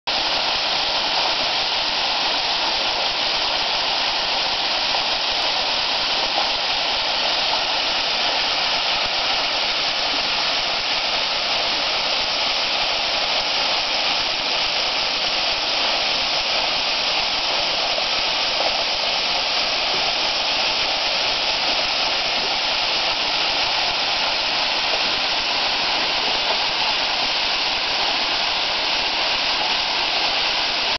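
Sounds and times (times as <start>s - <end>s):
waterfall rushing: 0.1s - 30.9s.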